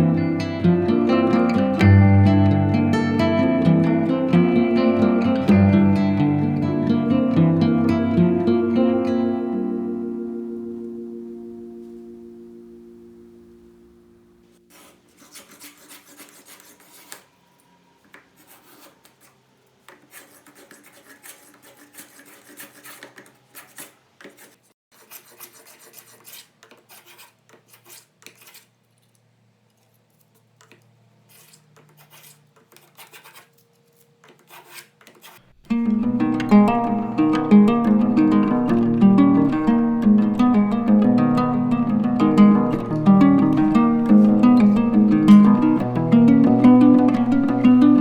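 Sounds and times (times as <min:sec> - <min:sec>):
hand tool scraping wood: 0:14.6 - 0:17.3, 0:18.0 - 0:28.7, 0:31.3 - 0:35.4.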